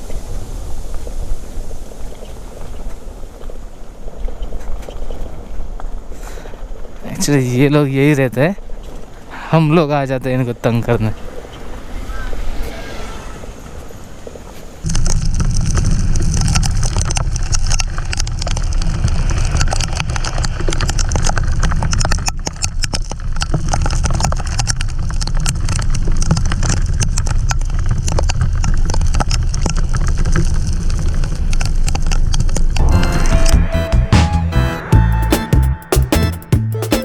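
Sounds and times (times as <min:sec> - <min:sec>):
dense patter of small clicks: 0:14.8 - 0:32.7.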